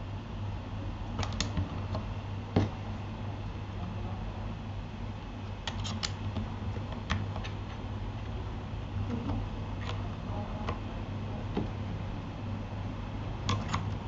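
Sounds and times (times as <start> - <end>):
steady low hum: 0.0 - 14.0
soft keyboard keystrokes: 1.2 - 2.0.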